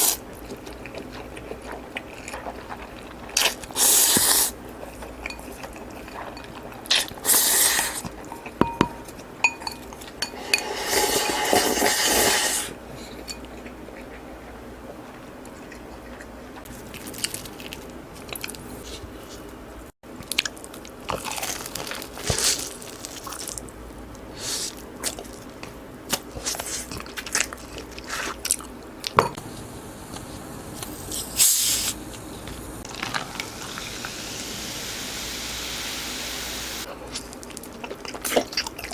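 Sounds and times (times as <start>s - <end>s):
crunchy chewing: 0.0s - 9.3s, 20.2s - 23.7s, 24.4s - 29.2s.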